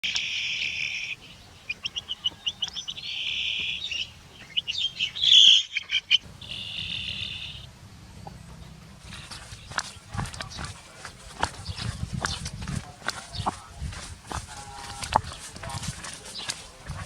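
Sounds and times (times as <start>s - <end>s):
animal short chirps: 5.2s - 7.7s
animal shrill screeches: 6.4s - 7.7s.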